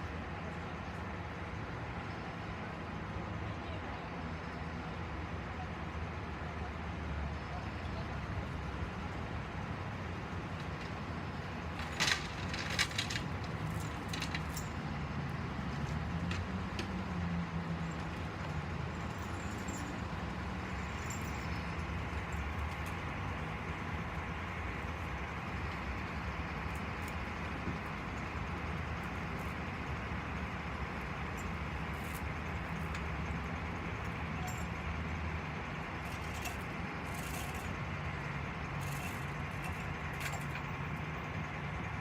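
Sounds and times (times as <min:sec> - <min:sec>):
large vehicle engine running: 0:05.3 - 0:42.0.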